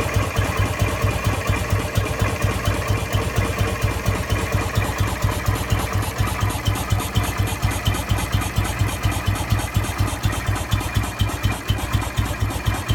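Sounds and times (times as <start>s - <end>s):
motorcycle engine idling: 0.0s - 12.9s.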